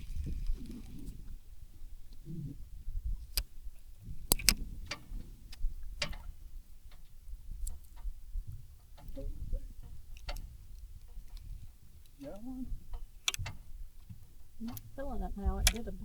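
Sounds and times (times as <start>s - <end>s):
steady low rumble: 0.0s - 16.0s
fishing gear clicks and knocks: 9.8s - 15.0s.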